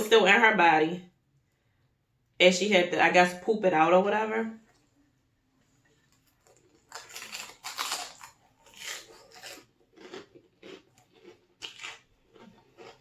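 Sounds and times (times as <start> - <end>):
crunchy chewing: 5.8 - 13.0.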